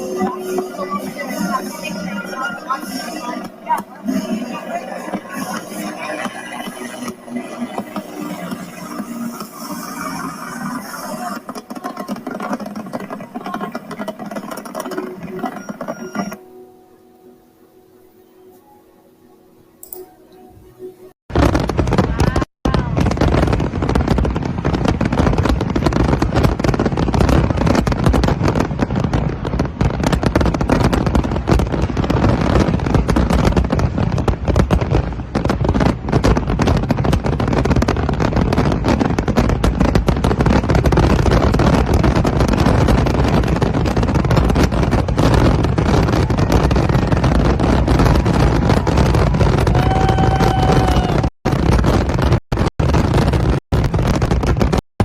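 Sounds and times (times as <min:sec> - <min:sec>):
pitched tone: 0:00.0 - 0:12.6, 0:13.4 - 0:21.1
fireworks banging and crackling: 0:00.0 - 0:16.4, 0:21.3 - 0:55.0.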